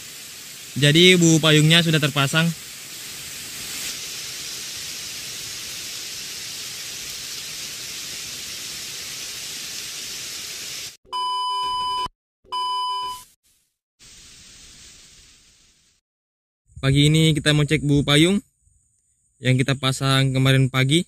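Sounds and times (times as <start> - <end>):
heavy rain falling: 0.0 - 11.0
electronic beep tones: 11.1 - 13.2.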